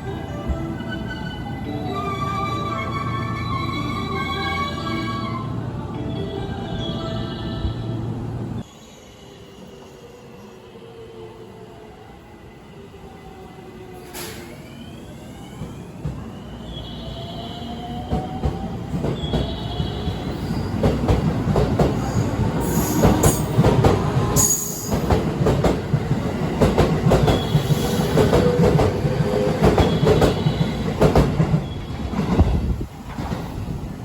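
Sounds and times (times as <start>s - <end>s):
train rumble: 17.2s - 34.0s.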